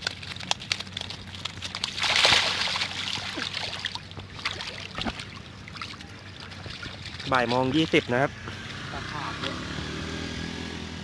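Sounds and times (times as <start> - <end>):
water sloshing and trickling: 0.0 - 9.8.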